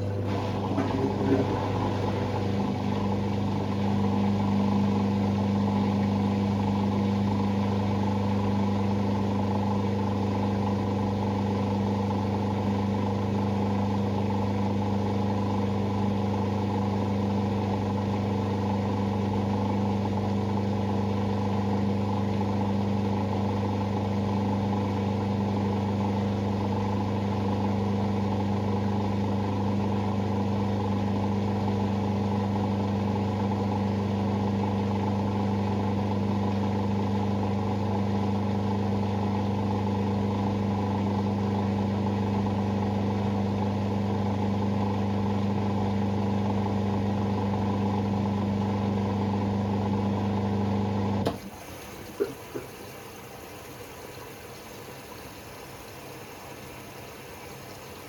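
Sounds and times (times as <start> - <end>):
washing machine drain pump humming: 0.0 - 58.0
faint water trickle: 51.4 - 58.0.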